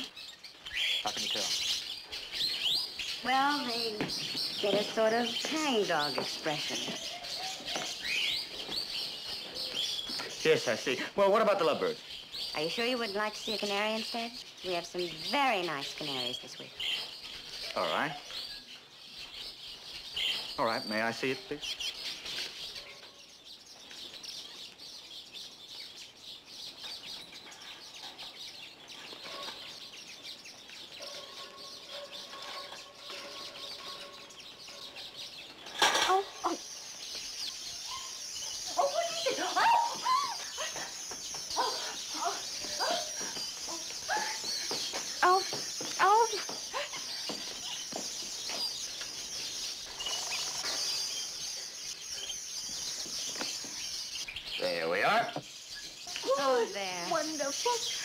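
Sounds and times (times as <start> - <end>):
caged birds chirping: 0.0 - 58.0.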